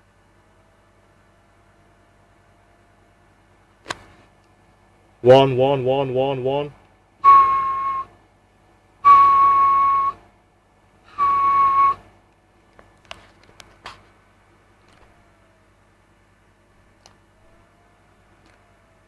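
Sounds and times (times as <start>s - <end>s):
single-pitch whistles: 7.2s - 8.1s, 9.0s - 10.2s, 11.1s - 12.0s.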